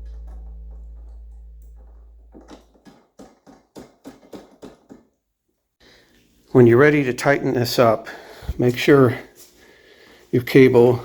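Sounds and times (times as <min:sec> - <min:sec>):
acoustic guitar music: 0:00.0 - 0:02.8.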